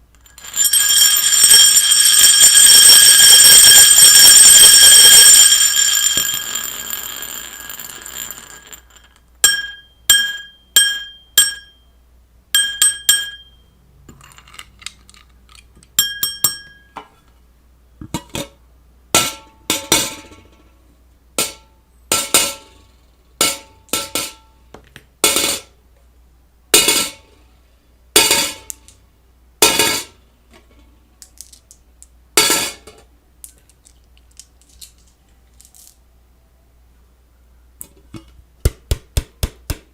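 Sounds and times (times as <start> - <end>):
loud ringing: 0.3 - 11.8
sharp glass clinks: 16.0 - 17.0.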